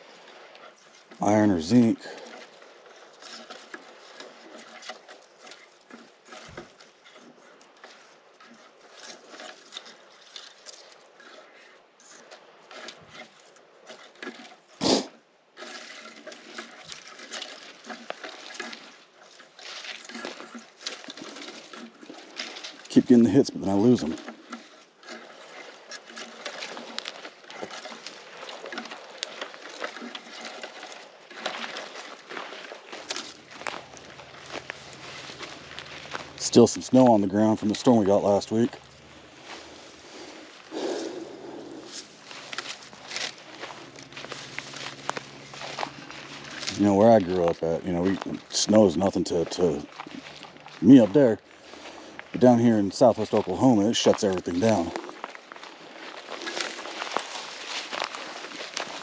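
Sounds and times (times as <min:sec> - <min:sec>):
crackling forest ground cover: 0:00.0 - 0:59.0
footsteps through dry leaves: 0:25.4 - 0:59.0.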